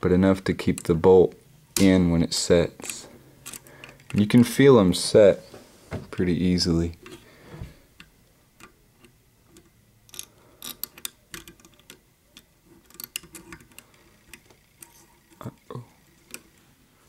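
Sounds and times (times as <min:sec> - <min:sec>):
lock pick metallic clicks: 0:02.8 - 0:04.2, 0:08.0 - 0:14.9.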